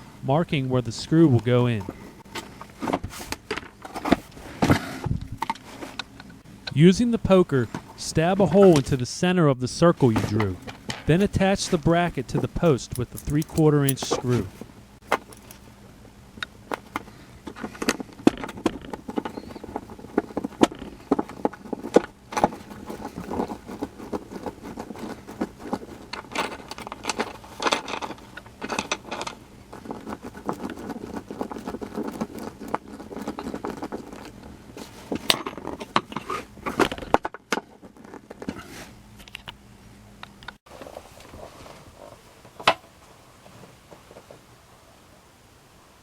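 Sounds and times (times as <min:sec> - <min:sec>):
small metal parts clinking: 0:10.5 - 0:14.6, 0:15.2 - 0:15.7.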